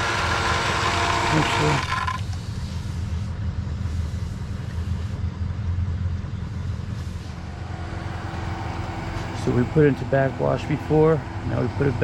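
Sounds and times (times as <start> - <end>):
pool filter pump humming: 0.0 - 2.8, 7.2 - 12.0.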